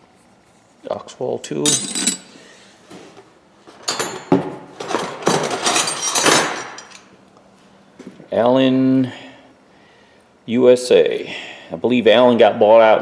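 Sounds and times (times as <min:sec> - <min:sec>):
steel wrenches clinking together: 0:01.7 - 0:02.4, 0:04.9 - 0:07.1.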